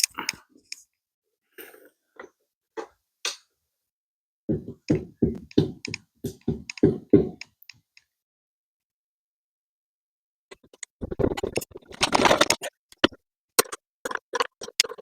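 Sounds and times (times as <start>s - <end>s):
sharp knocks: 4.5s - 7.4s.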